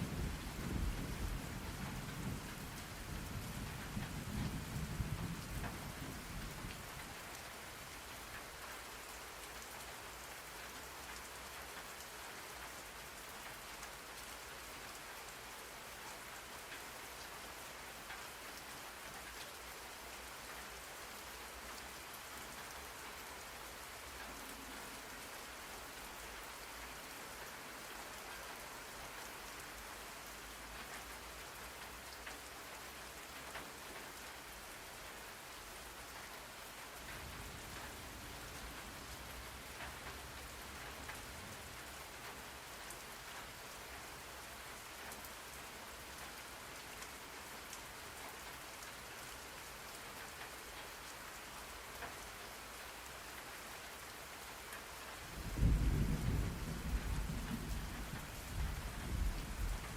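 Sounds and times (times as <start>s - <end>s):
steady rain hiss: 0.0s - 59.9s
raindrops ticking: 36.0s - 46.4s, 54.6s - 59.9s.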